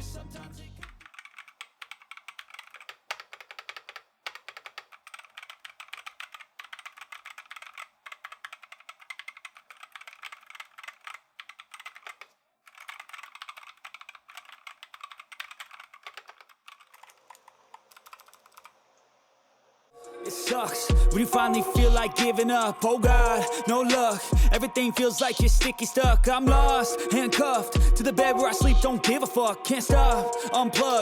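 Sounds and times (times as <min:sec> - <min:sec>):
fast typing on mechanical keyboard: 0:01.0 - 0:18.8.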